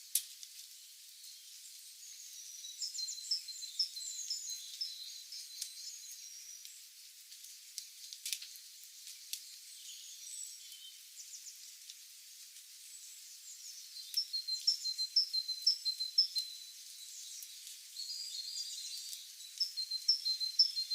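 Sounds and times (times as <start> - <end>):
steady hiss: 0.0 - 20.9
songbirds chirping and calling: 1.2 - 6.8, 9.1 - 11.8, 12.8 - 20.9.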